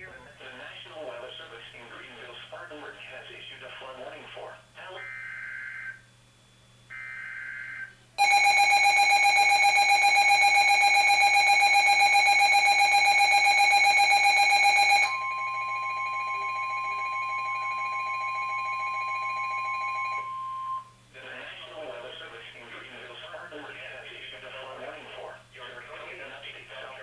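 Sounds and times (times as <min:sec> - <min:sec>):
buzzy alarm tone: 0:06.9 - 0:21.0
steady warning tone: 0:06.9 - 0:21.0.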